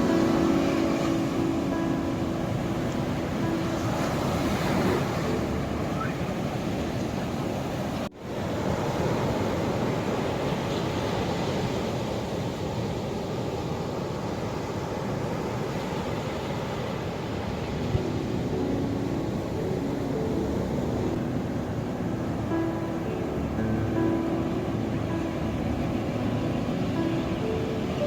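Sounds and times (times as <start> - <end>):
faint soft music: 0.0 - 7.2, 17.7 - 28.0
waves breaking: 0.0 - 28.0.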